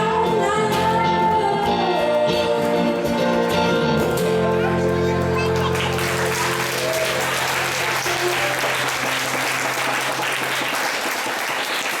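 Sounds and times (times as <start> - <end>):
audience applauding: 5.4 - 12.0.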